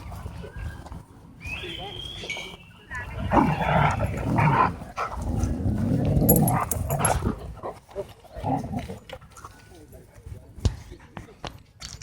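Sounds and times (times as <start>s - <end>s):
dogs growling: 3.2s - 9.1s.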